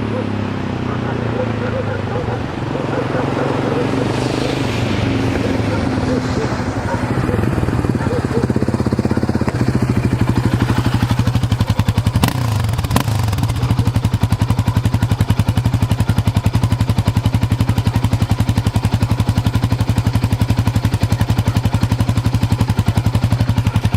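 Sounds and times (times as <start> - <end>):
engine idling with pulsing beat: 5.4 - 23.9
sharp exhaust pops: 5.8 - 23.9.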